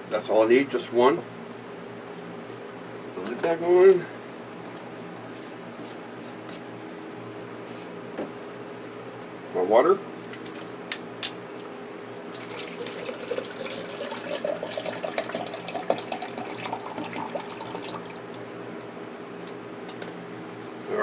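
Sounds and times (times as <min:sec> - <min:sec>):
water pouring into a cup: 0:12.3 - 0:18.4.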